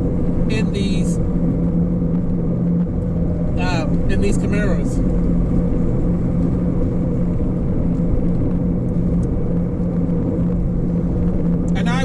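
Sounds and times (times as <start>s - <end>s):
car engine cruising drone: 0.0s - 12.0s
road and wind noise: 0.0s - 12.0s.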